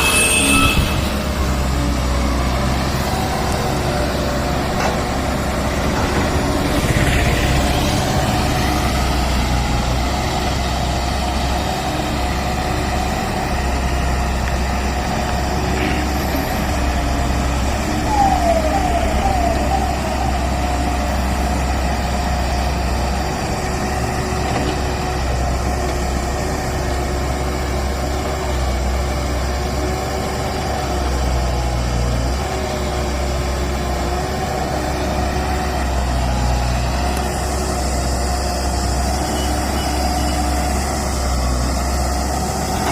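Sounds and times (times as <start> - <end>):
short falling squeals: 0.0 - 1.6, 17.8 - 21.4
diesel engine running: 0.8 - 42.9.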